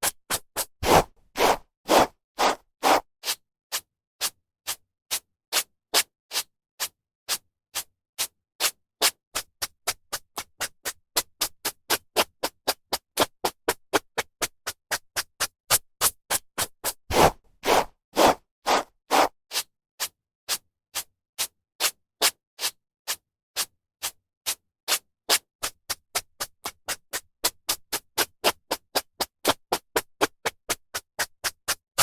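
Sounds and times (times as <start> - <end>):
hairbrush swishing through hair: 0.8 - 3.0, 17.1 - 19.3.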